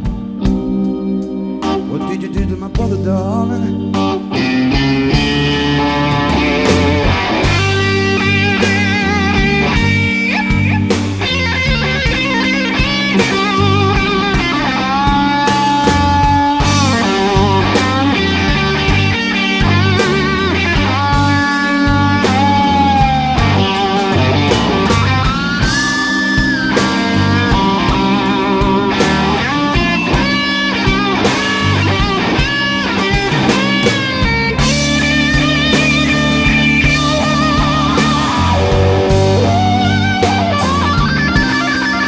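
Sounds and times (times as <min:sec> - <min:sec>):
bass: 0:00.0 - 0:42.0
drums: 0:00.0 - 0:42.0
electric guitar lead: 0:00.0 - 0:42.0.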